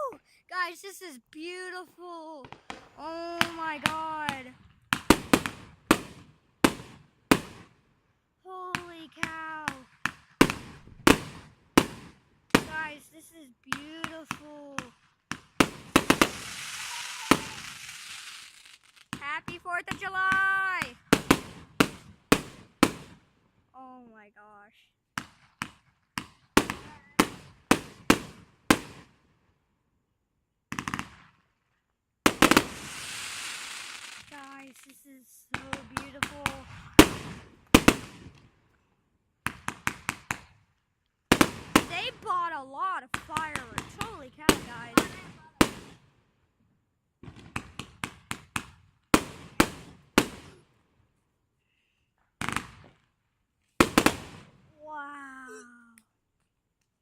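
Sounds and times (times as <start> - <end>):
fireworks loud bangs: 2.4 - 7.7, 8.7 - 13.0, 13.7 - 23.2, 25.2 - 29.1, 32.3 - 38.4, 41.3 - 42.4, 43.1 - 46.1, 47.2 - 50.6, 53.8 - 54.6.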